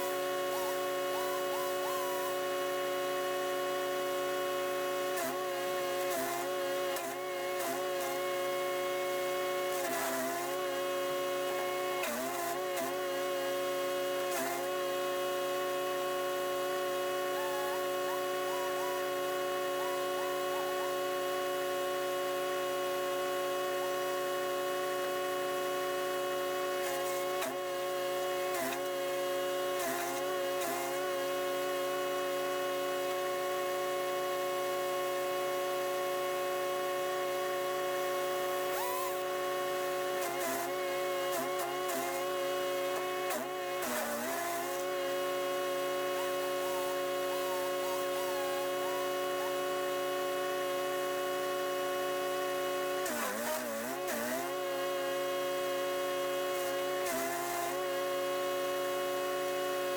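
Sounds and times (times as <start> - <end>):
wood chipper engine running: 23.0 - 59.9.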